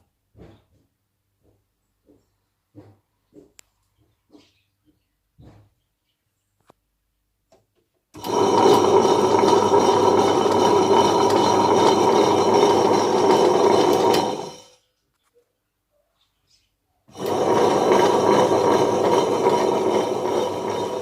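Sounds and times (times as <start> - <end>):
wet grinder motor running: 8.2 - 14.8, 17.1 - 21.0.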